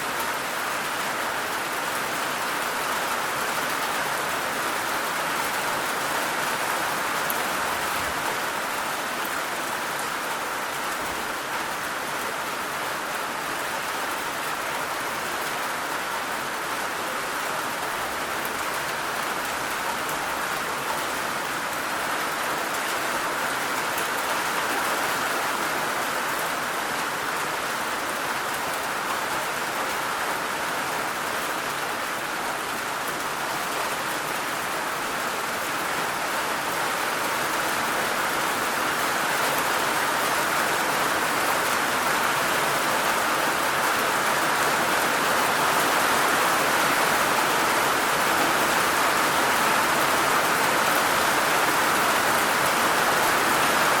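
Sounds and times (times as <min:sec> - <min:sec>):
heavy rain falling: 0:00.0 - 0:54.0.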